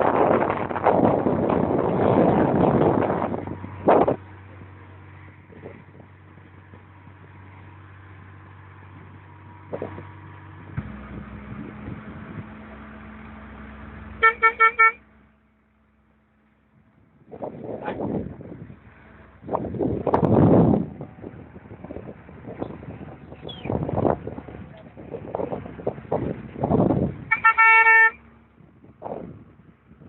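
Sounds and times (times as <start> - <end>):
engine hum: 0.0 - 30.0
vehicle horn tooting: 14.2 - 15.0, 27.3 - 28.2.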